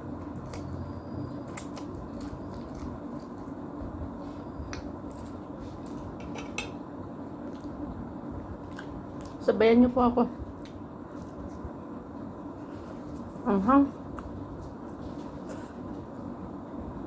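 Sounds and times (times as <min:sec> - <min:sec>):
steady background hum: 0:00.0 - 0:17.0
soft mouth eating sounds: 0:13.9 - 0:16.0.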